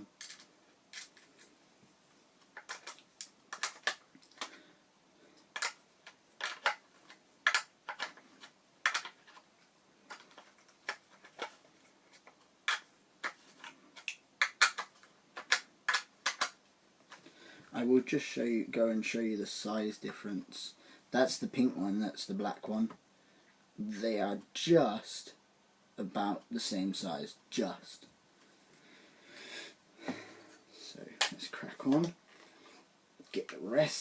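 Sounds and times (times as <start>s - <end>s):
skate parts clicking and knocking: 0.1s - 1.4s, 2.5s - 4.6s, 5.4s - 17.3s.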